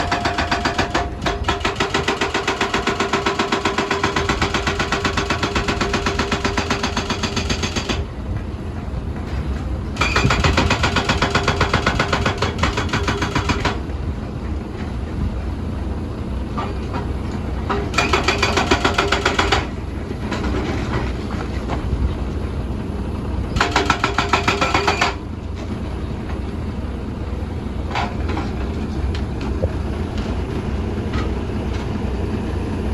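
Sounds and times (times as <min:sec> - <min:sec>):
excavator fast clatter: 0:00.0 - 0:08.1, 0:10.0 - 0:13.8, 0:17.7 - 0:21.4, 0:23.6 - 0:25.2
excavator engine rumble: 0:06.3 - 0:12.4, 0:13.8 - 0:32.9.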